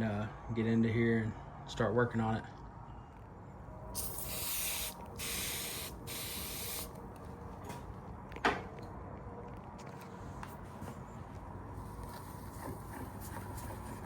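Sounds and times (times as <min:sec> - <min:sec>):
spraying hiss: 0:04.0 - 0:07.0.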